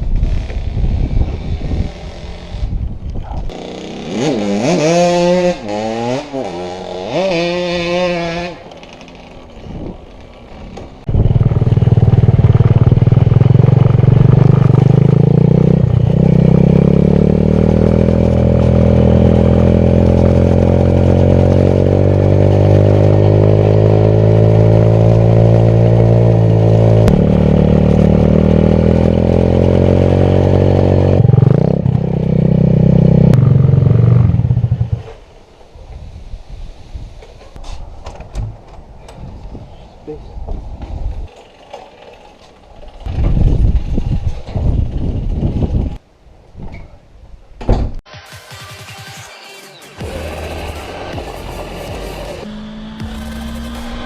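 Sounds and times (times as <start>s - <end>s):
small engine revving: 0.0s - 2.8s, 3.5s - 9.4s, 11.0s - 35.0s, 49.9s - 54.0s.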